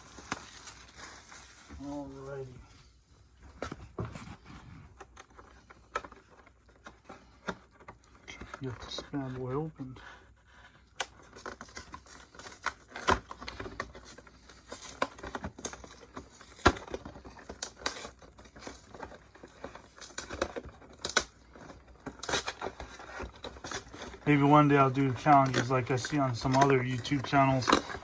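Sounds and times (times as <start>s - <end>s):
packaging crinkling and tearing: 0.0s - 2.5s, 10.8s - 28.0s.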